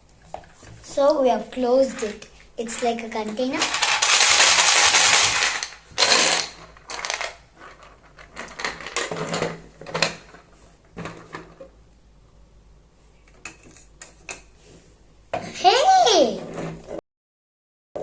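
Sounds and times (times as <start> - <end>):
plastic cubes rattling in tray: 1.8 - 11.6.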